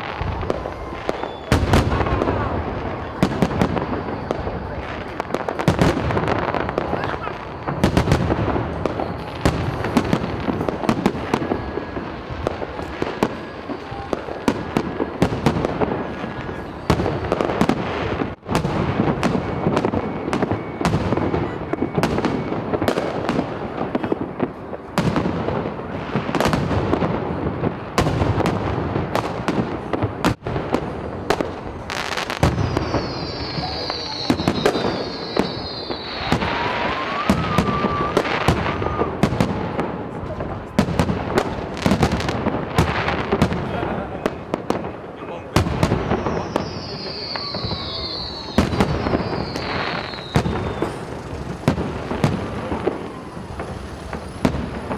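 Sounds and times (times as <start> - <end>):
high whistle sliding down: 0.0 - 15.3, 31.9 - 39.2, 46.2 - 54.9
fireworks bangs and crackling: 0.0 - 54.9.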